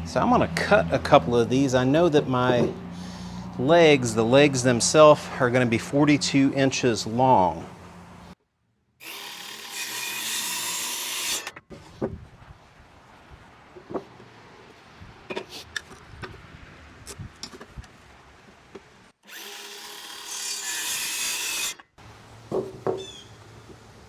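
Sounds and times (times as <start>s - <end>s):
wooden clunks: 2.5s - 2.8s, 13.8s - 14.2s, 22.5s - 23.1s
circular saw cutting wood: 9.0s - 11.6s, 19.2s - 22.0s.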